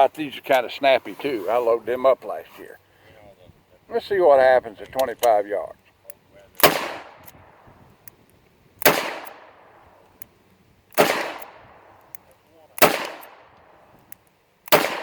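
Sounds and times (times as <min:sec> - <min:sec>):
revolver shots echoing: 0:06.6 - 0:07.7, 0:08.8 - 0:09.8, 0:11.0 - 0:12.0, 0:12.8 - 0:13.8, 0:14.7 - 0:15.0.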